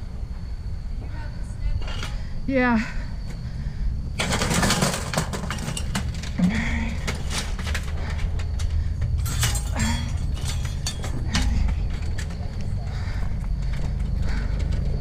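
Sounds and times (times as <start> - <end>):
steady low rumble: 0.0 - 4.3, 5.7 - 15.0
metal scraping rattle: 4.2 - 12.5
scrap metal clanking: 9.0 - 11.8.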